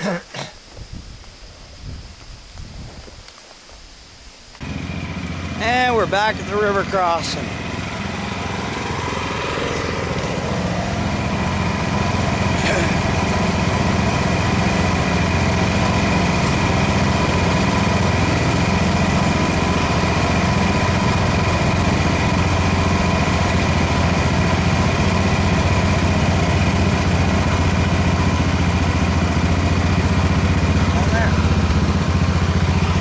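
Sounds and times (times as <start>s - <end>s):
garden tractor engine running: 4.6s - 33.0s.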